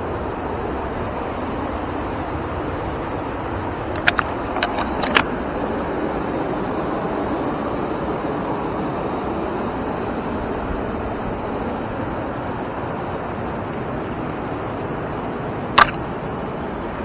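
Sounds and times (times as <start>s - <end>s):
river rushing: 0.0s - 17.0s
sharp click: 15.8s - 16.0s.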